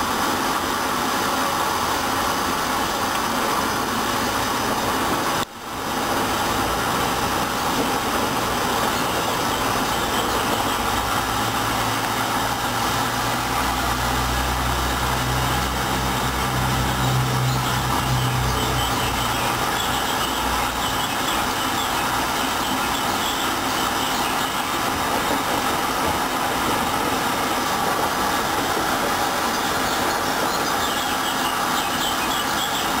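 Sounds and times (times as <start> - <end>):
washing machine drum rushing: 6.0 - 31.7.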